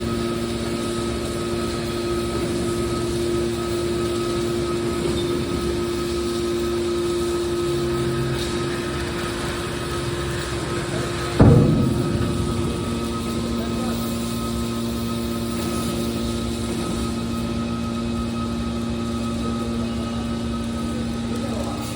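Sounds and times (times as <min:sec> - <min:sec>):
baler power unit humming: 0:10.2 - 0:15.4.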